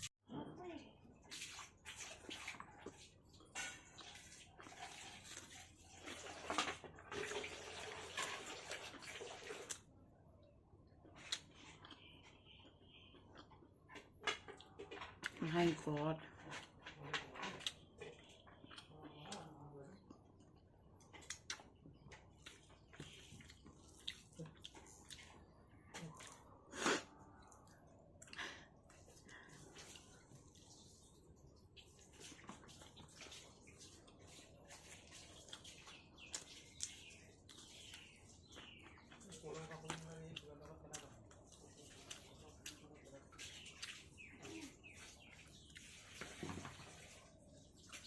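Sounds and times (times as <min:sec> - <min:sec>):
running water: 0:01.1 - 0:09.9, 0:29.0 - 0:48.0
wet chewing of food: 0:01.1 - 0:48.0.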